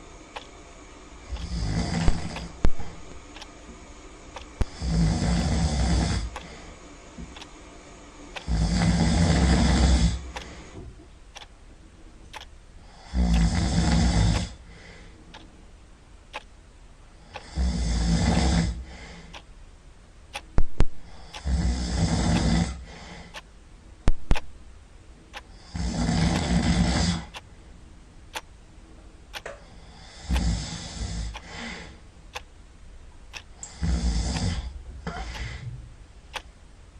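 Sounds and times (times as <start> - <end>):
sharp clicks: 0.3 - 0.6, 1.3 - 3.5, 4.4 - 4.8, 7.2 - 7.5, 10.3 - 10.5, 11.3 - 11.6, 12.3 - 12.5, 13.3 - 14.5, 15.3 - 15.5, 16.3 - 16.5, 24.1 - 24.6, 30.3 - 30.6, 33.3 - 34.6, 35.3 - 35.6, 36.3 - 36.6
loud snoring: 1.3 - 3.0, 4.6 - 6.6, 8.4 - 10.6, 12.9 - 14.6, 17.4 - 18.8, 21.2 - 22.9, 25.6 - 27.4, 29.9 - 31.4, 33.6 - 35.5.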